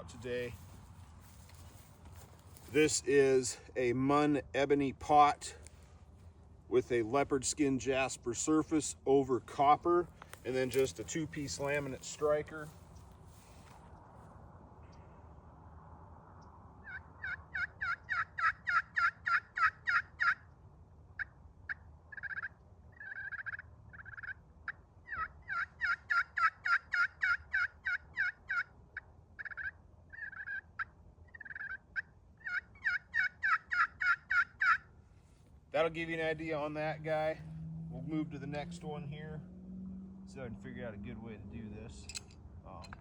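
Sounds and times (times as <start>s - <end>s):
turkey call clucks: 16.8s - 20.5s, 21.2s - 34.9s
turkey pot call yelps: 16.8s - 20.5s, 21.2s - 34.9s.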